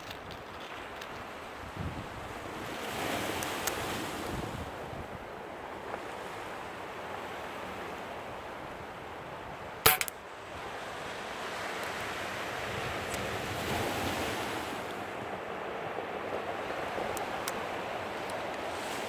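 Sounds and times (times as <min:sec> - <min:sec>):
wind buffeting microphone: 0:00.0 - 0:03.2.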